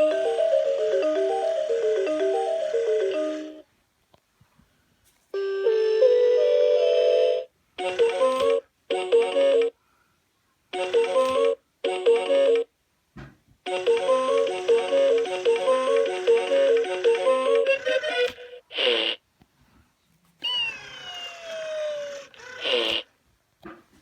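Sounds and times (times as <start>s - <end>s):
electronic toy beeping melody: 0.0s - 3.6s, 5.4s - 9.7s, 13.7s - 18.3s.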